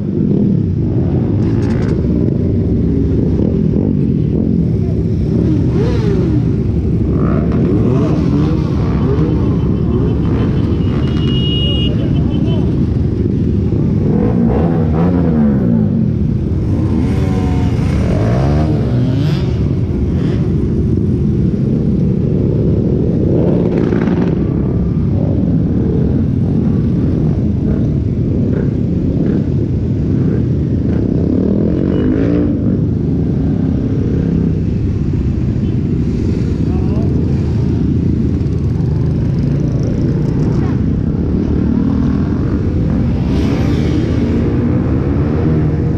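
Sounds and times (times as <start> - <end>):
motorcycle engine revving: 0.1 - 35.0.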